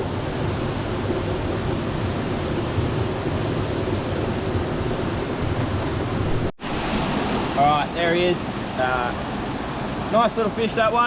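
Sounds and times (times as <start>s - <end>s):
creek water rushing over rocks: 0.0s - 11.0s.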